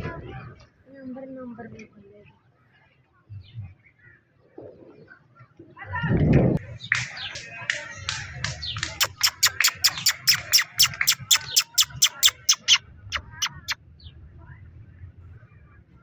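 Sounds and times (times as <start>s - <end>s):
bird sharp high calls: 6.9s - 13.8s.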